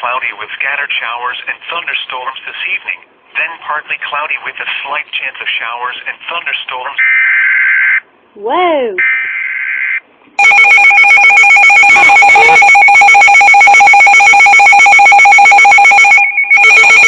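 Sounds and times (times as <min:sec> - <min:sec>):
warbling data tones: 0:09.0 - 0:17.0
pulsing emergency alarm ringing: 0:10.4 - 0:17.0.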